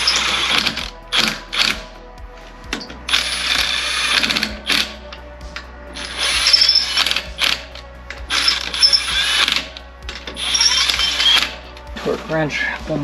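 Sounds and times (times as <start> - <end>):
impact wrench running lug nuts: 0.0 - 1.9, 2.8 - 5.0, 6.0 - 11.7.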